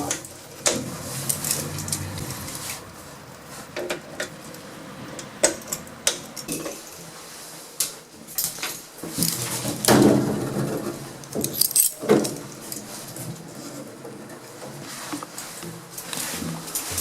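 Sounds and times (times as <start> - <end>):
lift doors sliding open: 0.0 - 17.0
low hum: 0.9 - 3.8.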